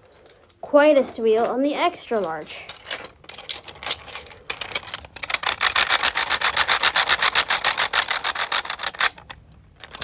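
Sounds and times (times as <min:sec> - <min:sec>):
plastic wheel clicking: 0:02.7 - 0:10.0.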